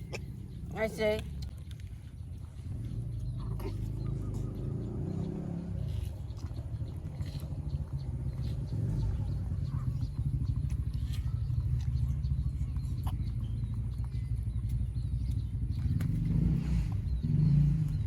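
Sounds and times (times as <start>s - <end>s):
low pulsing rumble: 0.0s - 18.0s.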